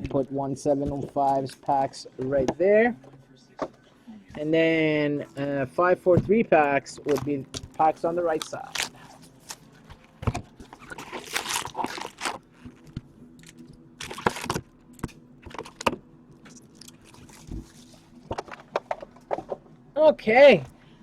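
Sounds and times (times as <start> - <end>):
foil packs crinkling: 8.0 - 9.7, 10.6 - 14.6.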